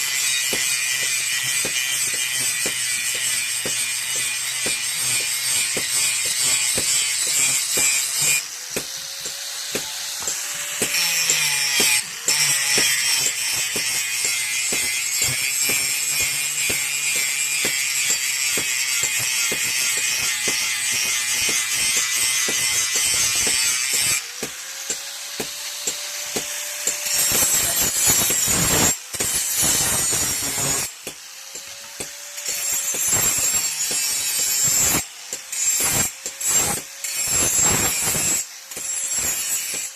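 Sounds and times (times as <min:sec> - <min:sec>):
knife grinding on a grinding wheel: 0:26.2 - 0:30.9.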